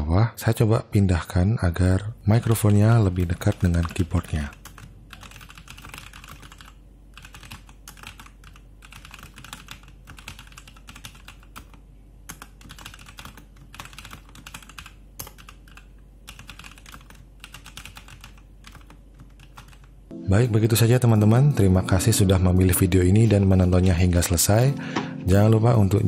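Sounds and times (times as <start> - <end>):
mechanical keyboard typing: 2.3 - 20.0.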